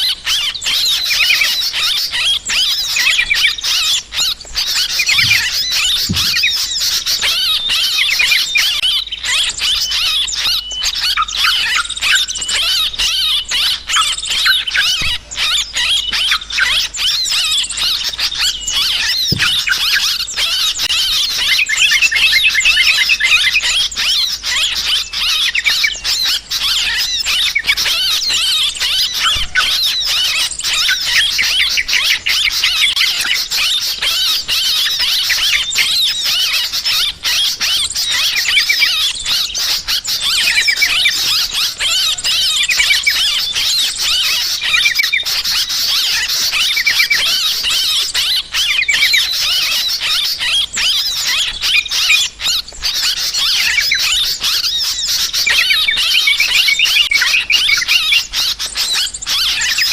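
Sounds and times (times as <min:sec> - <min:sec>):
bulbuls chattering: 0:00.0 - 0:59.9.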